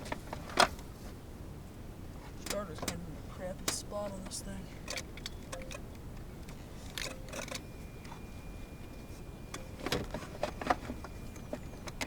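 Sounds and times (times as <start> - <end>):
handling clicks and knocks: 3.6 - 8.2, 9.5 - 12.0
faint steady high tone: 3.9 - 5.8, 7.0 - 12.0.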